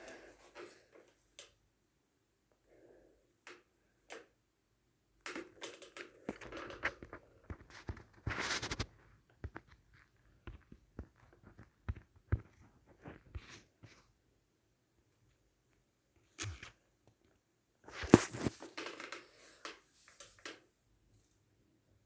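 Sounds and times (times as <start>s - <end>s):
rustling and scratching: 5.3s - 14.2s, 17.8s - 21.4s.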